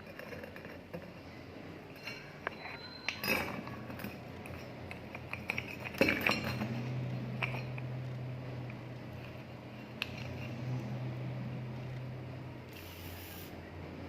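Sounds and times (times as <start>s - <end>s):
small metal parts clinking: 1.9s - 7.9s
small motor humming: 9.9s - 13.6s.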